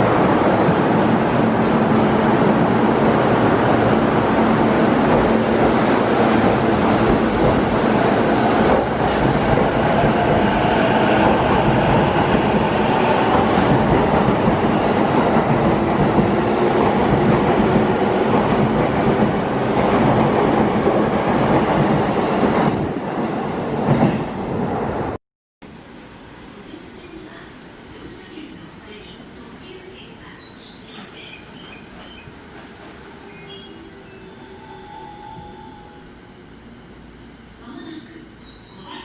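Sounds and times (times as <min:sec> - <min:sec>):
train wheels rumbling on rail: 0:00.0 - 0:24.7, 0:28.0 - 0:33.2.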